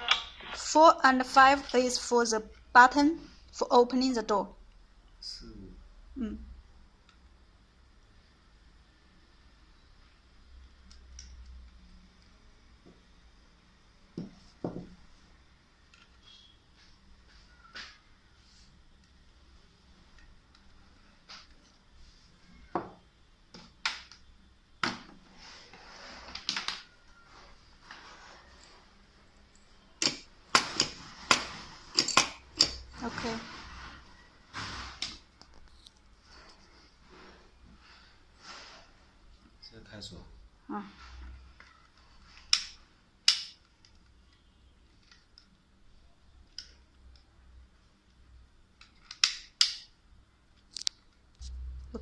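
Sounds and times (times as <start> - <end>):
clicks of small hard parts: 30.0 - 32.8, 42.5 - 44.0, 48.8 - 49.9.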